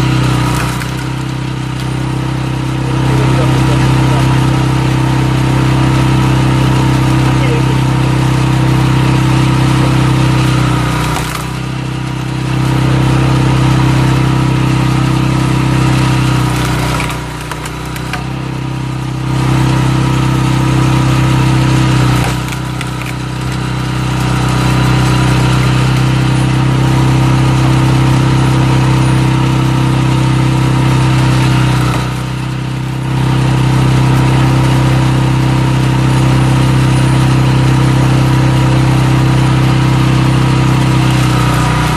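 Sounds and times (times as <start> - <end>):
small engine running under load: 0.0 - 41.9.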